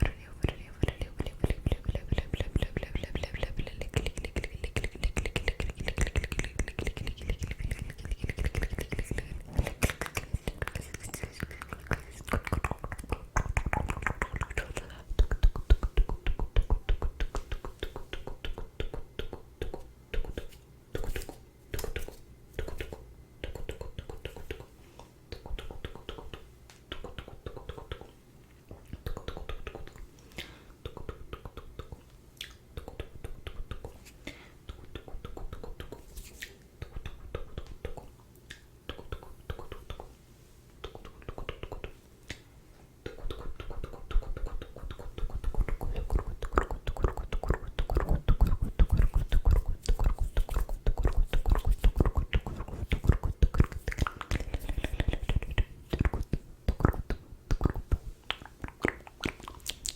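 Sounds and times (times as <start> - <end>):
wet mouth clicks and smacks: 0.2 - 30.2, 30.8 - 34.1, 34.7 - 40.2, 40.8 - 42.4, 43.0 - 59.9.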